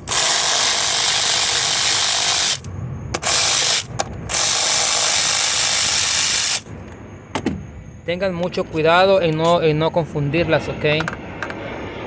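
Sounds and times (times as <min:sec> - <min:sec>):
ratchet wrench clicking: 0:00.0 - 0:06.6.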